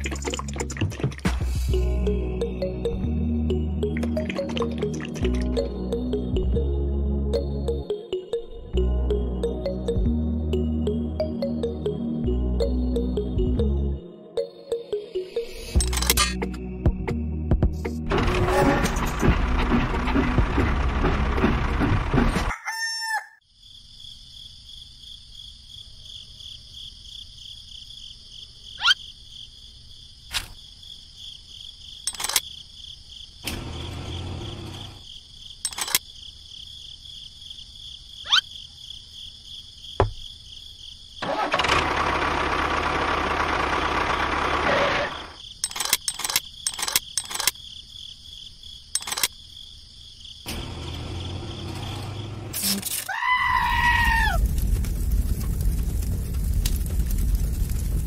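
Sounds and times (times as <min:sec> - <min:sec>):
rooster crowing: 0:22.5 - 0:23.4, 0:53.1 - 0:54.4
sharp clicks: 0:35.6 - 0:36.0, 0:45.6 - 0:47.6, 0:49.0 - 0:49.4.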